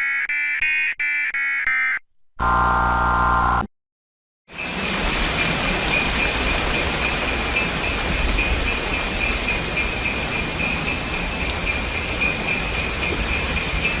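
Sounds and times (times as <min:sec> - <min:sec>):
sleigh bells jingling: 0:04.6 - 0:14.0.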